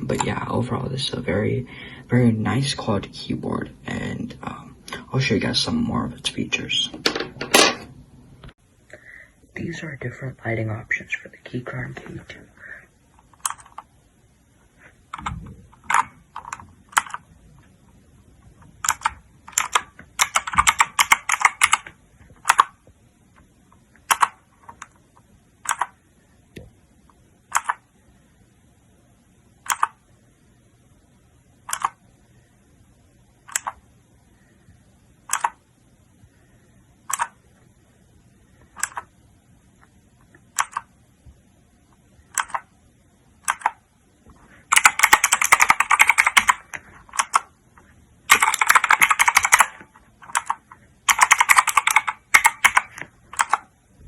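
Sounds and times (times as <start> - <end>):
mechanical keyboard key clicks: 18.8 - 21.8, 24.1 - 24.9, 25.6 - 25.9, 27.5 - 27.8, 29.6 - 30.0, 31.7 - 32.0, 33.5 - 33.8, 35.3 - 35.6, 40.6 - 40.9, 42.3 - 42.6, 43.4 - 43.8, 44.7 - 47.5, 48.3 - 49.7, 50.3 - 53.6.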